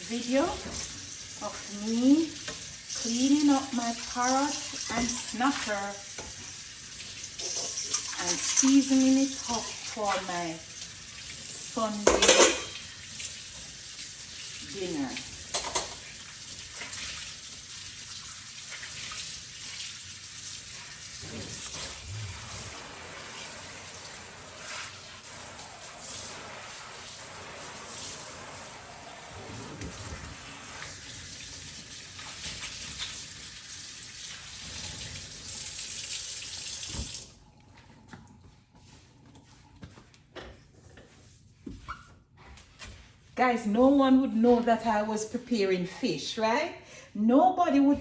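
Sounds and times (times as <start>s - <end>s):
tap running into sink: 36.5s - 37.3s.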